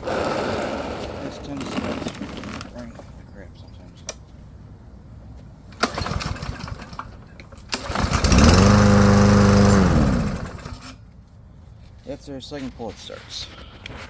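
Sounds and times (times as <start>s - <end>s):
mower engine running: 0.0s - 2.7s, 7.8s - 10.9s
recoil starter pulled: 0.0s - 2.9s, 5.8s - 10.9s.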